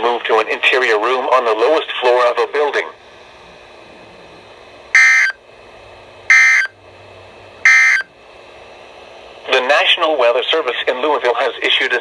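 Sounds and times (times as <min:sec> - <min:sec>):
harsh digital data bursts: 0:05.0 - 0:05.4, 0:06.3 - 0:06.7, 0:07.7 - 0:08.1.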